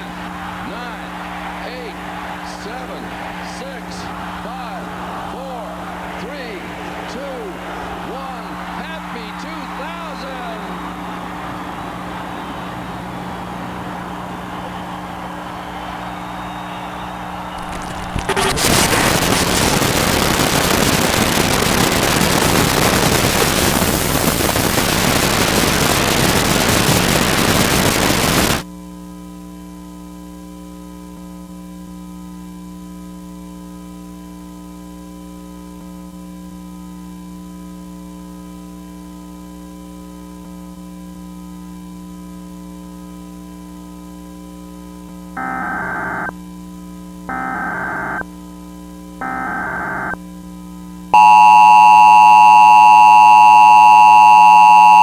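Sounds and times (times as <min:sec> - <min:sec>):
television static hiss: 0:00.0 - 0:14.2, 0:16.9 - 0:28.6.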